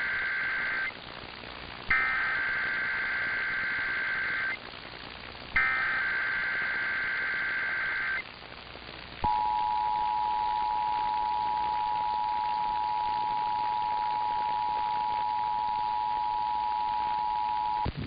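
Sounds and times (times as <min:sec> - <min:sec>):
buzzy data bursts: 0:00.0 - 0:08.2.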